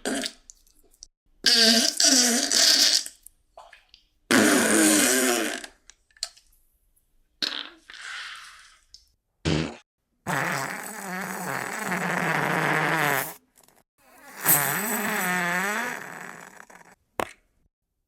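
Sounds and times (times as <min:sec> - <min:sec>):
farts: 0:01.4 - 0:03.1, 0:04.3 - 0:05.8, 0:09.4 - 0:17.0.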